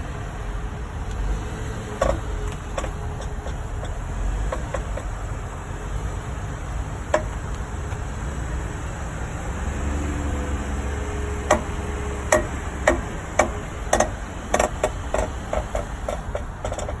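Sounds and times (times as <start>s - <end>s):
low rumble of moving vehicle: 0.0s - 17.0s
sharp clicking knocks from car: 1.9s - 5.3s, 7.0s - 8.1s, 11.4s - 17.0s.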